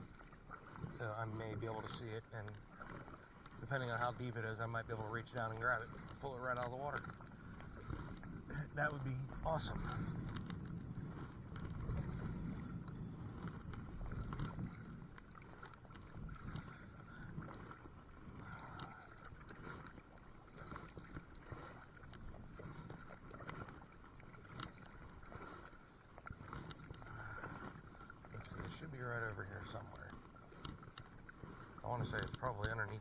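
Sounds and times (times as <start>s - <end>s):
kayak paddling: 0.0s - 33.0s
water noise: 0.0s - 33.0s
wind buffeting microphone: 5.9s - 19.9s.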